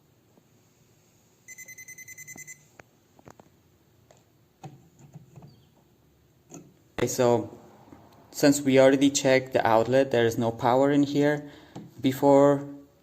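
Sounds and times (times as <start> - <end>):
voltage tester beeping: 1.5 - 2.7.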